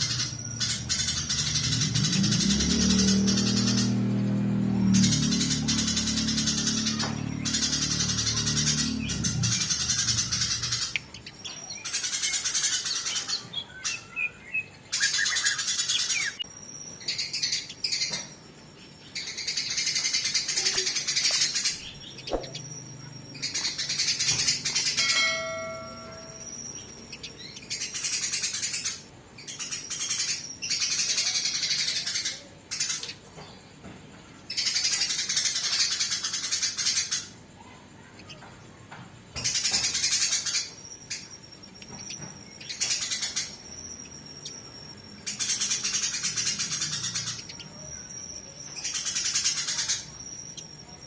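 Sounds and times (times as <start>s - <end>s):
sparrows harsh chatter: 0.0s - 51.0s
clear whistled bird notes: 19.1s - 32.2s.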